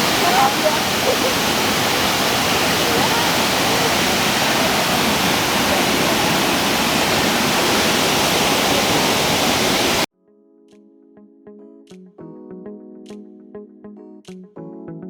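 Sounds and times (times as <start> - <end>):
waterfall roaring: 0.0 - 10.1.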